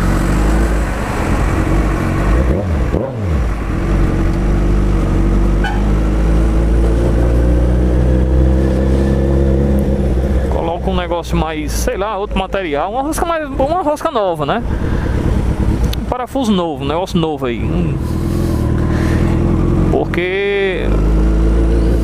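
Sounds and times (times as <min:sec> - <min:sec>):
motorcycle engine running loud: 0:17.8 - 0:22.0.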